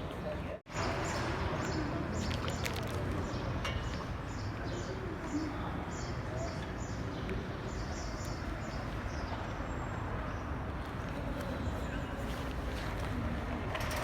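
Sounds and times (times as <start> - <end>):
small birds chirping: 0.7 - 10.5.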